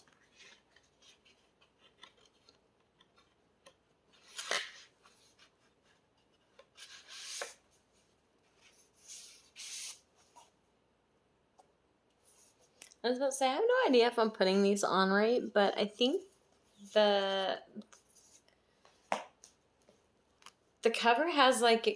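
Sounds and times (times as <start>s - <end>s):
paper and card swishing: 8.6s - 10.5s.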